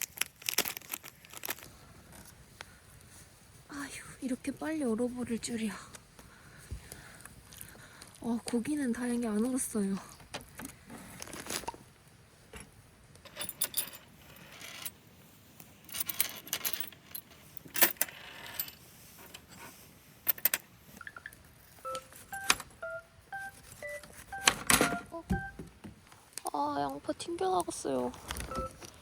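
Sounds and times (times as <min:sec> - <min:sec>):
small metallic clinks: 0:12.6 - 0:15.0
short beeping tones: 0:21.0 - 0:25.6, 0:28.5 - 0:28.8.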